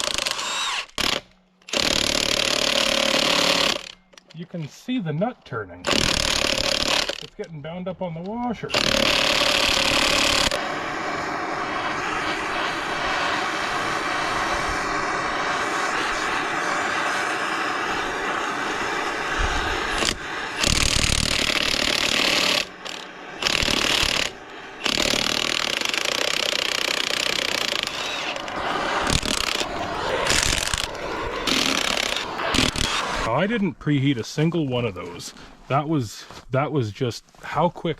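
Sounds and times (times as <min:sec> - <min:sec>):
torch flame hissing: 0:08.7 - 0:33.6.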